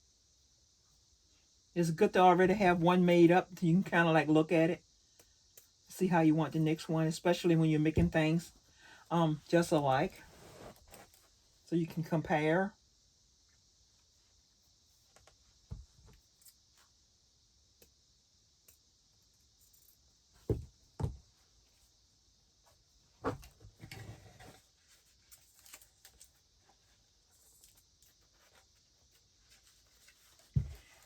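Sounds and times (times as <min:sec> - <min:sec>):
short rustle: 0:10.0 - 0:11.5.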